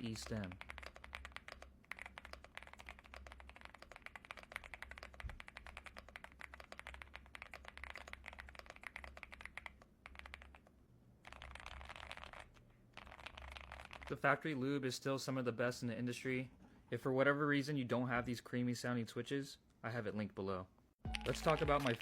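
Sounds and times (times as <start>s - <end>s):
mechanical keyboard typing: 0.0s - 14.1s, 21.1s - 22.0s.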